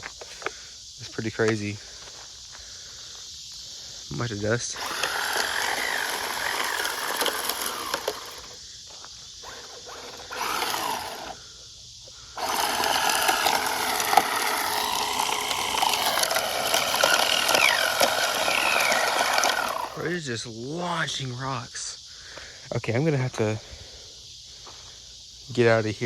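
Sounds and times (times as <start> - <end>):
wheels flinging dirt and rocks: 4.4 - 11.4, 12.4 - 20.2
electric motor and gears whining: 4.6 - 8.6, 9.4 - 11.4, 12.4 - 20.2.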